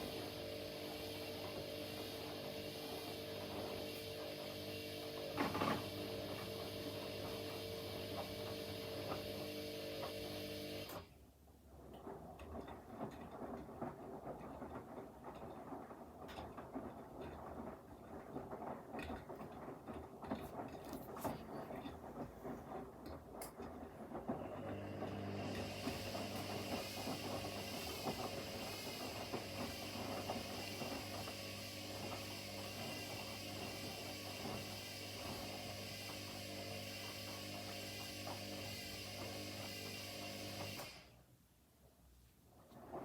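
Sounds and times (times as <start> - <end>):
washing machine motor hum: 0.0 - 41.4, 42.4 - 43.0
drum clicks and rustles: 11.5 - 24.6.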